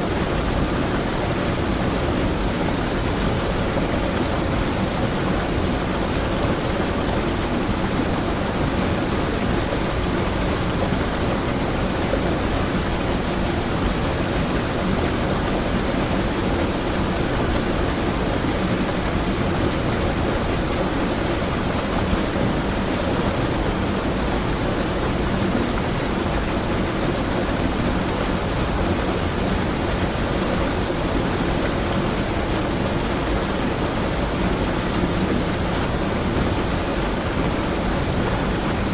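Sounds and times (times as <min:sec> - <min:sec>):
water rushing over waterfall: 0:00.0 - 0:38.9.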